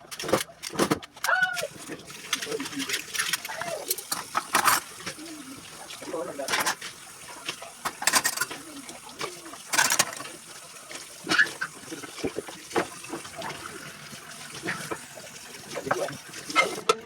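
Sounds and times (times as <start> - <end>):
clinks and knocks of items: 0.0 - 1.7, 2.3 - 5.2, 6.5 - 6.8, 7.8 - 10.4
tap water running into sink: 1.5 - 17.0.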